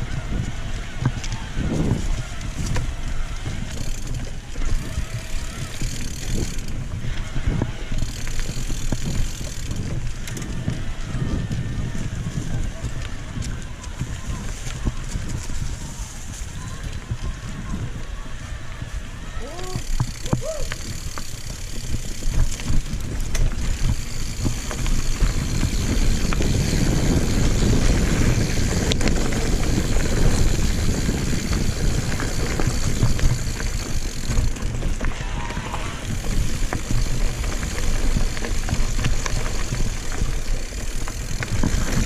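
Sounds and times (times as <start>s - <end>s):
bike knocking and rattling: 0.0s - 42.0s
bike tyres rumbling on rough ground: 0.0s - 42.0s.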